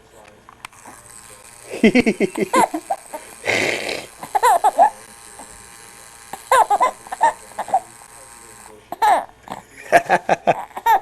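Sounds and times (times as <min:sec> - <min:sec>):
pager vibrating buzz: 0:00.6 - 0:11.0
baby laughing and squealing: 0:02.4 - 0:03.3, 0:04.2 - 0:05.0, 0:06.4 - 0:07.9, 0:08.9 - 0:09.6, 0:10.5 - 0:11.0.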